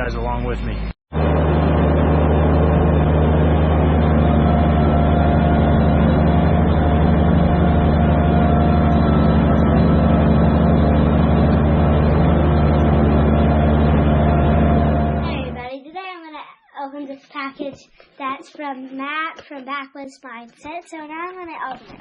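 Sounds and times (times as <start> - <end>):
tractor diesel engine running: 1.1 - 15.7.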